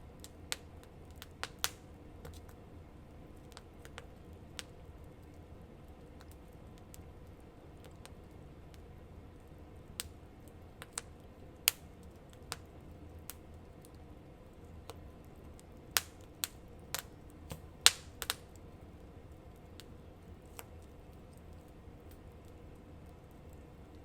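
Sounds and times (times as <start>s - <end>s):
wood fire crackling: 0.0s - 24.0s.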